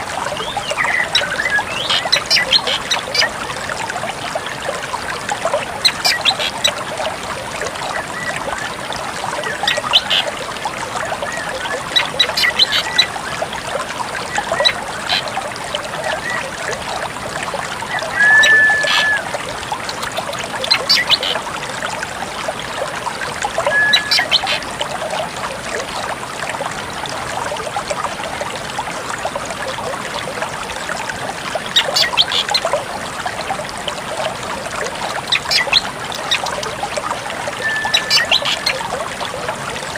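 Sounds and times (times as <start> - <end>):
steady trickling noise: 0.0 - 39.9
drongo calls: 18.0 - 19.3, 20.7 - 21.4, 23.6 - 24.7, 37.6 - 38.8
held whistles: 18.2 - 19.2, 37.6 - 38.1.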